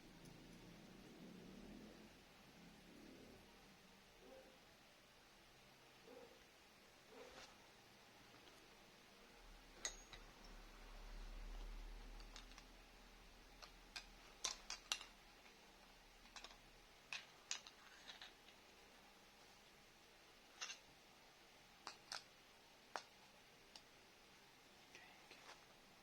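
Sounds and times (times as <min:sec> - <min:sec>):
faint low hum: 0:00.0 - 0:26.0
faint sharp clicks and taps: 0:22.9 - 0:24.0.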